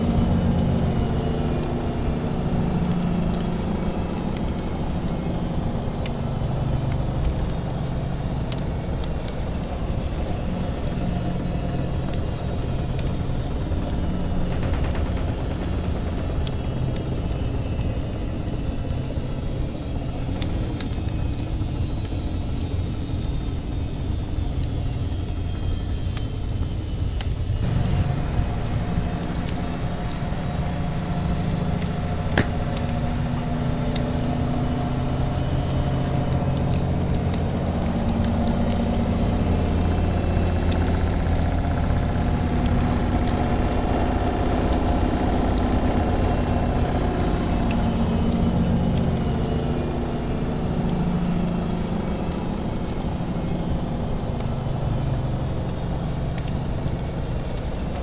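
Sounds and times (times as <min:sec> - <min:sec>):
washing machine rumbling: 0:00.0 - 0:23.9, 0:27.6 - 0:58.0
wood fire crackling: 0:00.0 - 0:58.0.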